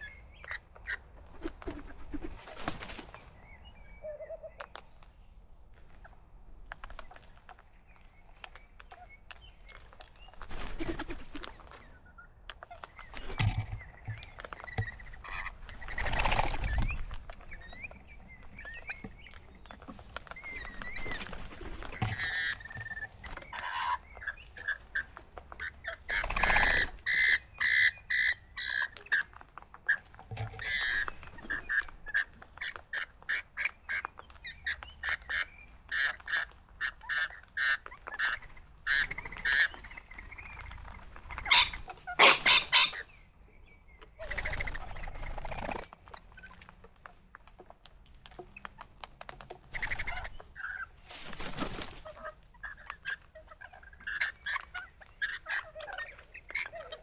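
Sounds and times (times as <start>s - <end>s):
parrots chirping: 41.3s - 43.1s
parrots squawking: 41.4s - 43.1s.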